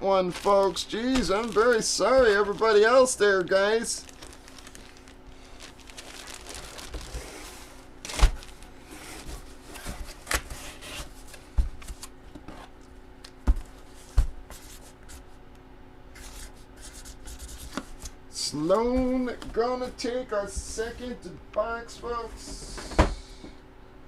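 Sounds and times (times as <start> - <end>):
packaging rustling: 0.2 - 11.3.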